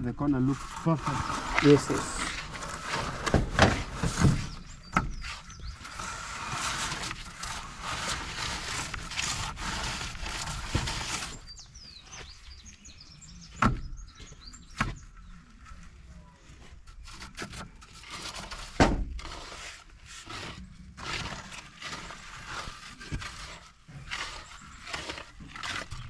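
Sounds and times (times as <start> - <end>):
birds chirping: 0.0 - 7.4, 11.1 - 16.5, 24.0 - 26.0
plastering tool scraping wall: 0.0 - 11.6, 16.6 - 26.0.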